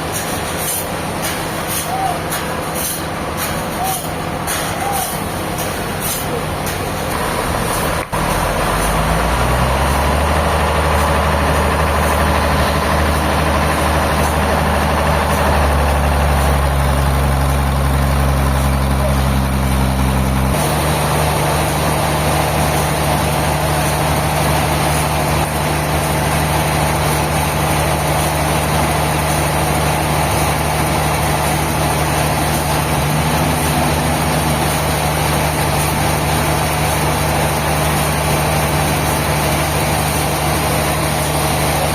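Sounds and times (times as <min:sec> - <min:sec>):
heavy engine running: 0:00.0 - 0:41.9.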